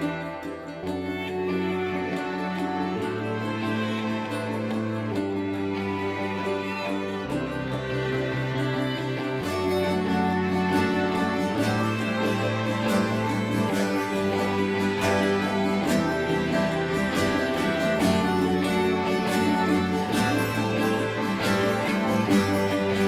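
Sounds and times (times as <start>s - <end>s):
plucked guitar music: 0.0s - 23.0s.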